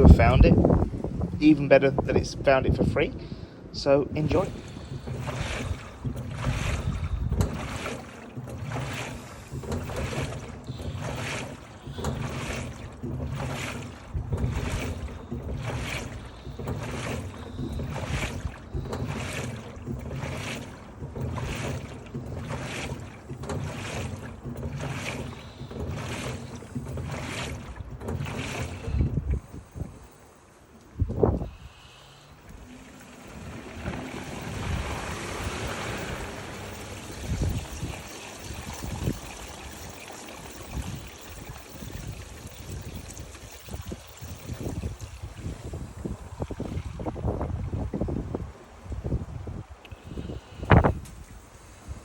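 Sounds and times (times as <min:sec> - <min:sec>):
low thumps: 0:00.0 - 0:02.9, 0:04.0 - 0:30.0
washing machine drum agitating: 0:00.0 - 0:31.5, 0:32.2 - 0:52.0
low motor hum: 0:00.0 - 0:52.0
water and clothes sloshing: 0:00.0 - 0:52.0.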